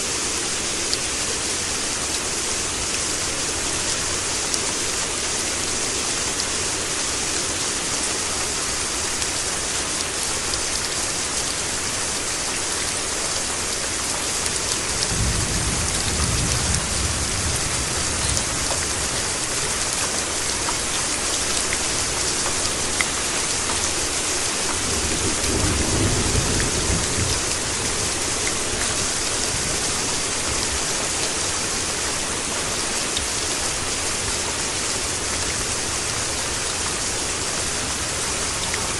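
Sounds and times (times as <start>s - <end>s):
heavy rain: 0.0s - 38.9s
low rumbles of thunder: 15.0s - 20.2s, 24.7s - 30.4s.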